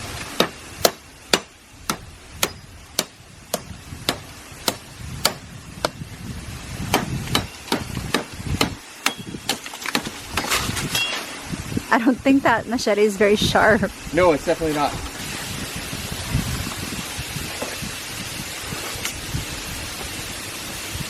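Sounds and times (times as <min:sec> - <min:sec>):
machete chopping wood: 0:00.2 - 0:06.0, 0:06.9 - 0:10.7.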